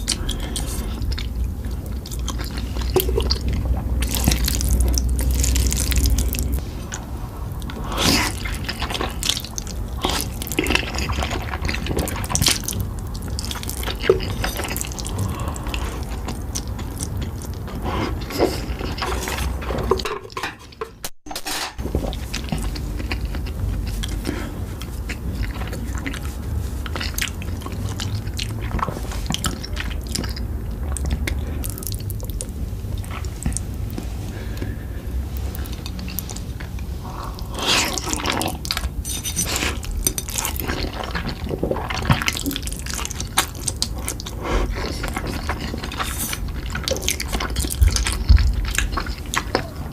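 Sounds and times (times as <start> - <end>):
wet chewing and slurping: 0.0 - 20.8, 21.8 - 49.9
utensils clinking: 13.4 - 15.2, 18.3 - 21.8, 37.8 - 41.4.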